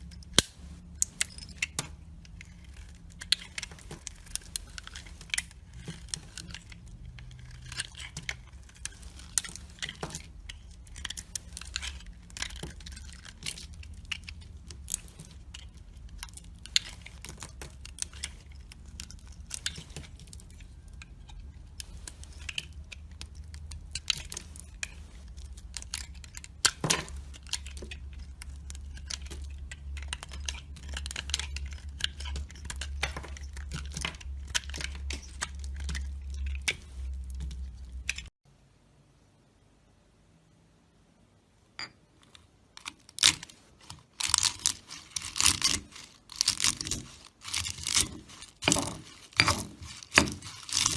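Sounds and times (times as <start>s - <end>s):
low steady hum: 0.0s - 50.9s
blade scraping dry soap: 43.2s - 50.9s.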